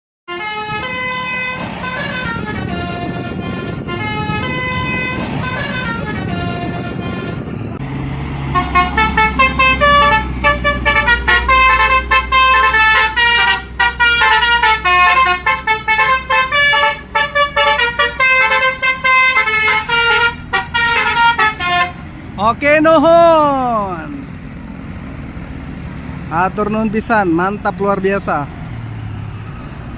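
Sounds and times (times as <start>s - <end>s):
multi-tone bus horn tune: 0.3s - 7.7s, 8.4s - 22.2s
bus engine humming: 0.3s - 29.9s.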